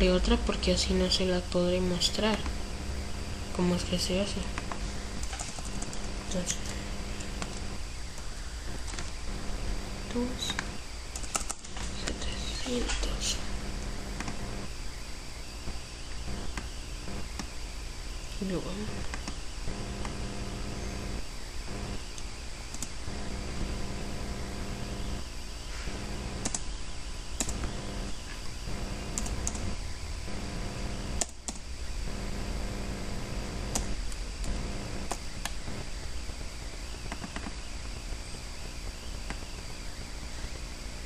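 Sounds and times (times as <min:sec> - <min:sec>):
computer hum and hiss: 0:00.0 - 0:41.0
computer mouse clicks: 0:10.1 - 0:12.2, 0:22.1 - 0:23.0, 0:26.4 - 0:26.6, 0:27.4 - 0:27.8, 0:31.2 - 0:31.6, 0:33.7 - 0:35.6, 0:37.0 - 0:37.6.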